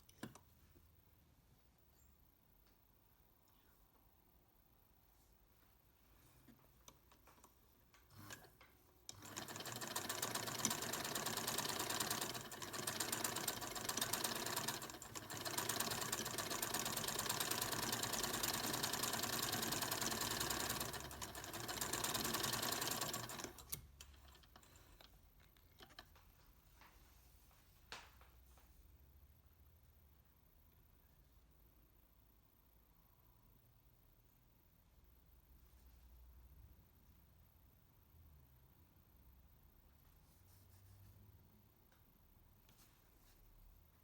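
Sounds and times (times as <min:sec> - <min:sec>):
sewing machine stitching: 0:08.1 - 0:25.1.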